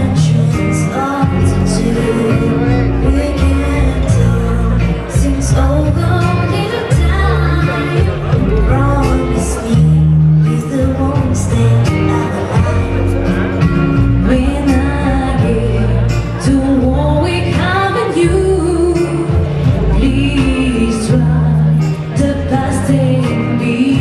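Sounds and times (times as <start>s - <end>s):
vocal group singing: 0.0s - 13.0s
bass line: 0.0s - 24.0s.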